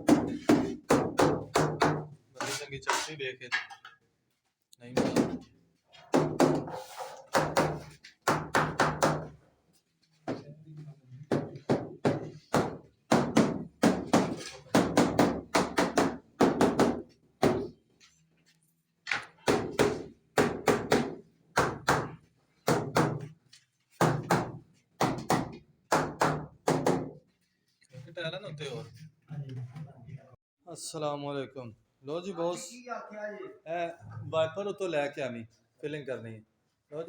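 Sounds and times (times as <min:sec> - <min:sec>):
hard knocks of masonry work: 0:00.0 - 0:03.8, 0:05.0 - 0:05.5, 0:06.1 - 0:09.4, 0:11.3 - 0:17.8, 0:19.1 - 0:27.2.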